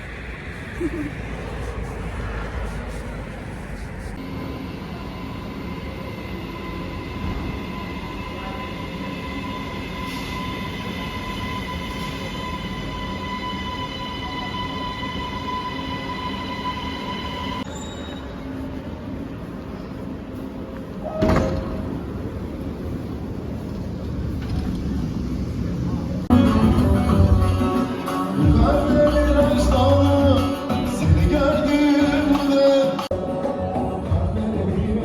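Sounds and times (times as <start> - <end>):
high whine: 0.0 - 18.8
train rumble: 0.0 - 35.0.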